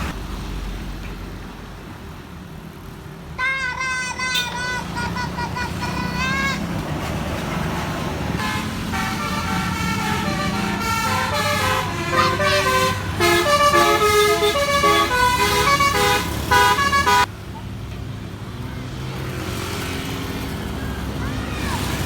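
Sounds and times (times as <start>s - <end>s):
low vehicle rumble: 0.0s - 22.0s
multi-tone musical bus horn: 3.4s - 6.8s, 8.4s - 17.3s.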